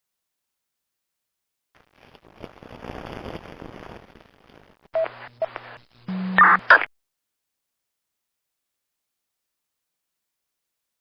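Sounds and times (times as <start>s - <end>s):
radio static: 4.9s - 6.9s
electronic beeps and blips: 5.0s - 6.9s.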